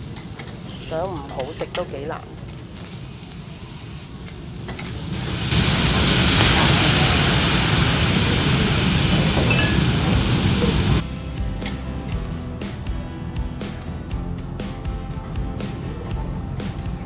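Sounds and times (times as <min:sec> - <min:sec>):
food sizzling on hot griddle: 0:00.0 - 0:12.8
hissing sizzle of steam: 0:00.0 - 0:12.8.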